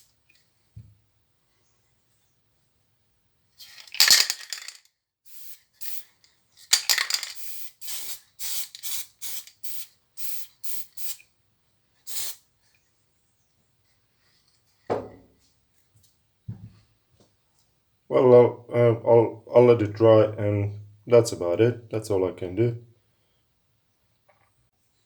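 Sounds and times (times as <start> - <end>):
spray paint can hissing: 5.3 - 6.1, 6.8 - 11.2, 12.1 - 12.4.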